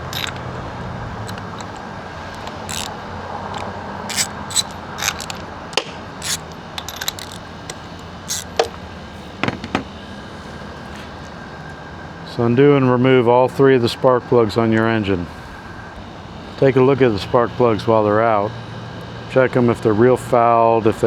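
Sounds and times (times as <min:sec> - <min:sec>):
ratchet clicking: 0:00.0 - 0:00.6, 0:01.2 - 0:08.8
metal tools clinking: 0:00.0 - 0:08.8.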